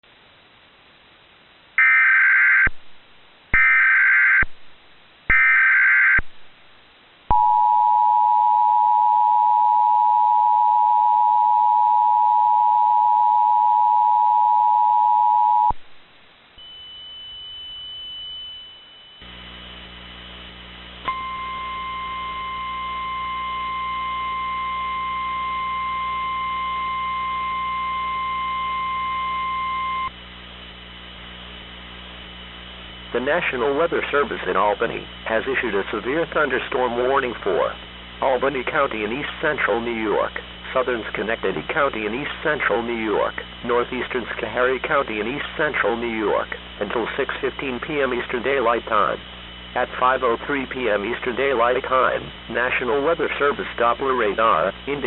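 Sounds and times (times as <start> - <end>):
hum: 0.0 - 55.0
steady warning alarm tone: 1.8 - 2.8, 3.6 - 4.5, 5.3 - 6.2, 16.6 - 19.5, 21.1 - 30.1
two-tone attention signal: 16.6 - 19.3, 21.1 - 30.1.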